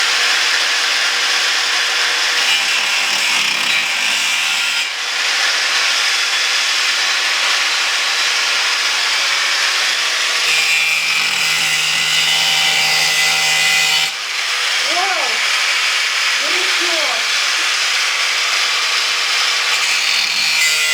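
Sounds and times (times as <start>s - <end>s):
angle grinder cutting: 0.0s - 20.9s.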